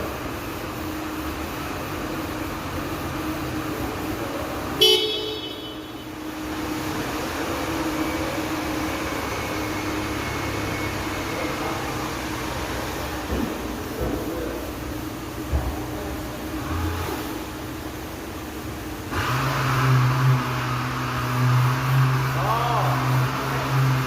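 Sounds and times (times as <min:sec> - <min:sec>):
horn-like toot: 0:04.8 - 0:06.1.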